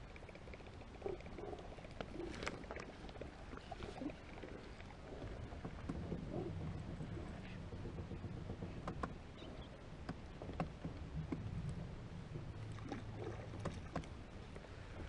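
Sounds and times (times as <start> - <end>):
faint boat motor hum: 0.0 - 15.0
light clicks and taps: 5.6 - 15.0.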